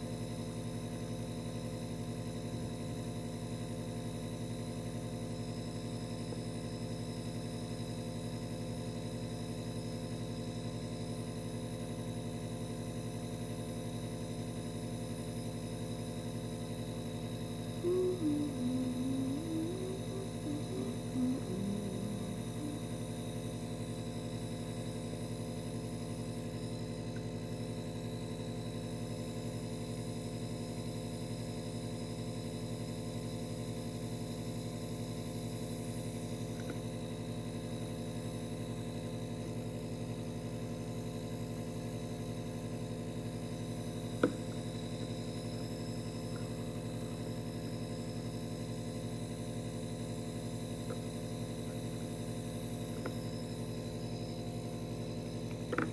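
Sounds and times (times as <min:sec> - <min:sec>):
droning hum of fixed tones: 0:17.5 - 0:28.8, 0:40.0 - 0:55.9.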